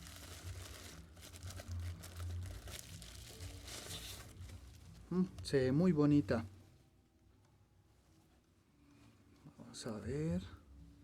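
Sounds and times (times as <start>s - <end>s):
packaging crinkling and rustling: 0.0s - 5.5s.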